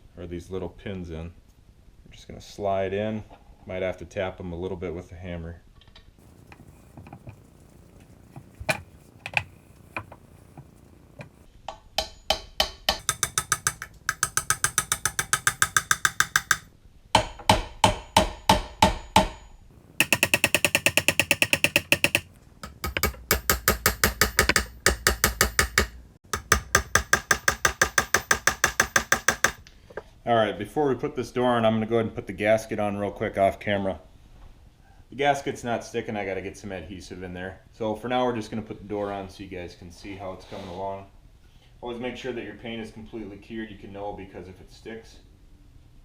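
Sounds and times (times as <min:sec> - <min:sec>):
hammer tapping on metal: 0:11.9 - 0:19.4, 0:20.0 - 0:29.6.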